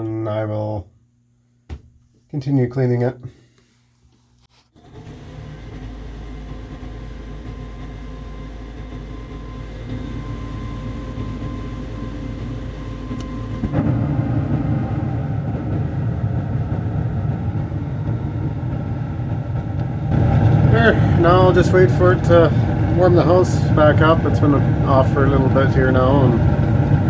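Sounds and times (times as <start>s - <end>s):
furnace fan humming: 0.0s - 27.0s
burners rushing: 20.0s - 27.0s.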